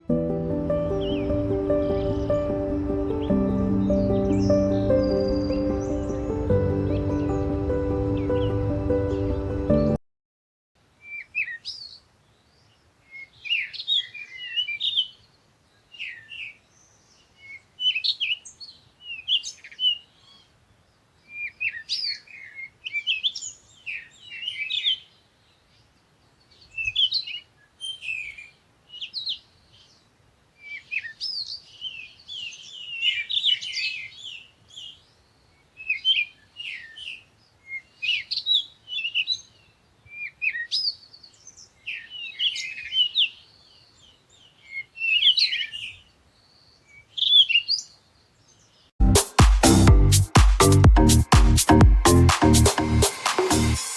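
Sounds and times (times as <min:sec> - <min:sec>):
songbird chirps and trills: 0:00.2 - 0:10.0.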